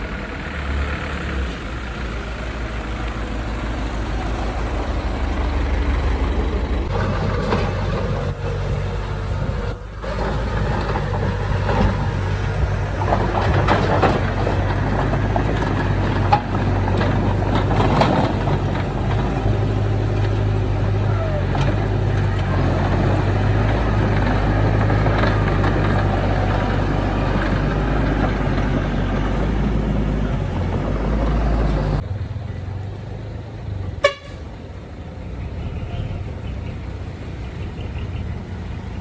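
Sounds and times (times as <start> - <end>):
heavy machinery diesel engine: 0.0 - 39.0
metal clanking and scraping soil: 5.9 - 32.0.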